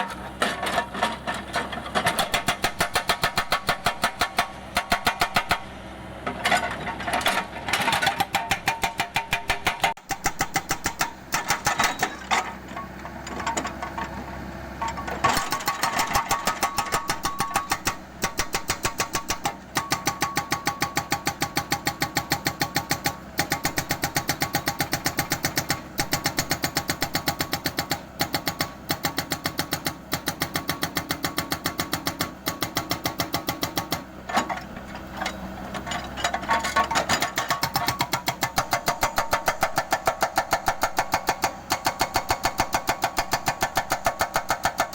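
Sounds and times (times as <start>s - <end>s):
excavator engine running: 0.0s - 44.9s
hydraulic breaker hammering concrete: 2.0s - 5.7s, 7.8s - 12.3s, 15.3s - 34.1s, 36.8s - 44.9s.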